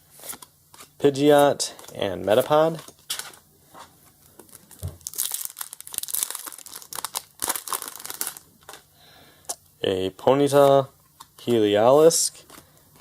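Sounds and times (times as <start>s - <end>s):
foil pack tearing and crinkling: 4.4s - 8.4s.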